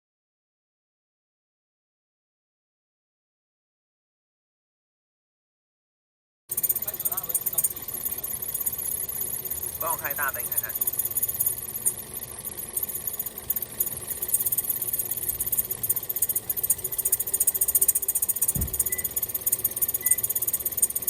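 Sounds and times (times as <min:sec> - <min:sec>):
car engine running: 0:06.5 - 0:21.0
low thump: 0:18.5 - 0:19.0.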